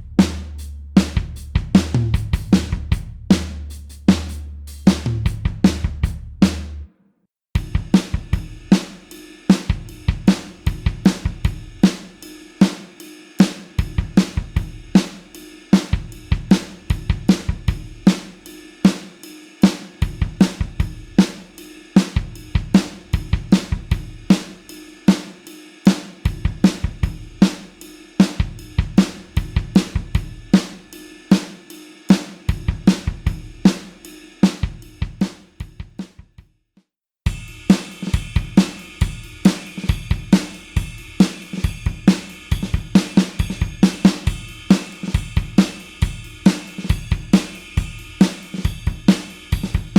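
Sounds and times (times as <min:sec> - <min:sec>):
rock drum kit beat: 0:00.0 - 0:06.8, 0:07.6 - 0:36.3, 0:37.3 - 0:49.9.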